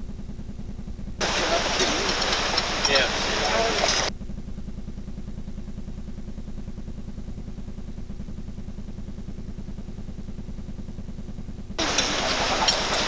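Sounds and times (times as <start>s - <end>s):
engine running: 1.2s - 4.1s, 11.8s - 13.0s.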